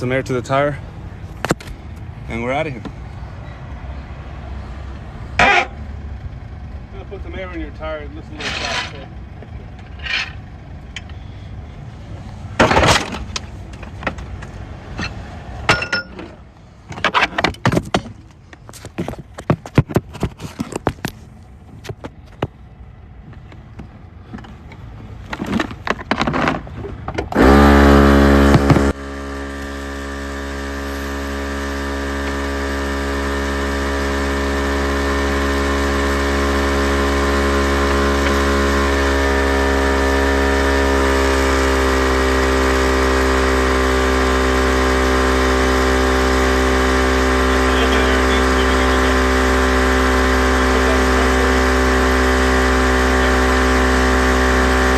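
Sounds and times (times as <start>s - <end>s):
air compressor running: 27.3s - 54.9s.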